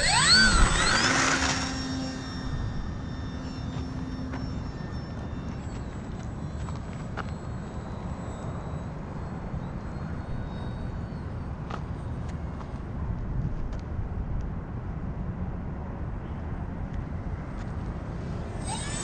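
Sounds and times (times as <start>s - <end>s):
model plane motor whine: 0.0s - 13.4s, 17.2s - 19.0s.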